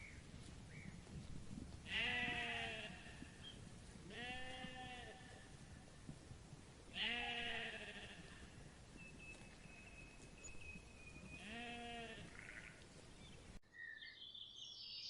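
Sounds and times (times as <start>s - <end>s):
sheep bleating: 1.9s - 3.2s, 4.1s - 5.4s, 7.0s - 8.4s, 11.4s - 12.8s.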